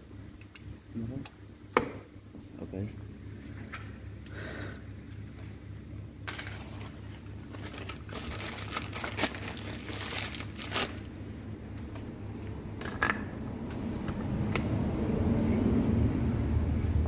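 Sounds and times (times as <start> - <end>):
steady low hum: 0.0 - 17.0
crinkling and rustling: 6.2 - 11.1.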